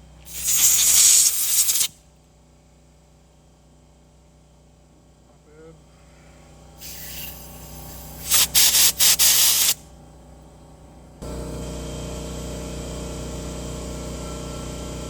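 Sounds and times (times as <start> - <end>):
steady low hum: 0.0 - 15.0
hissing spray bursts: 0.2 - 1.9, 6.8 - 9.8.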